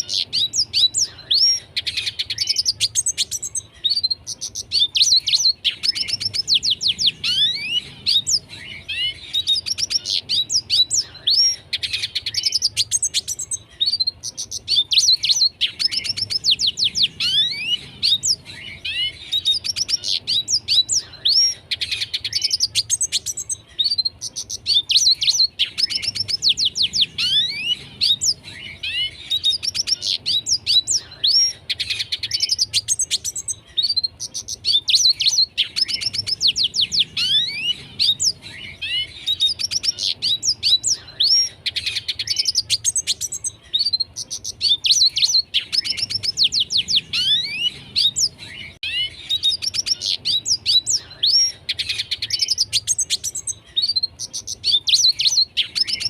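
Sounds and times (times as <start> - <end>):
bird twittering song: 0.0 - 56.0.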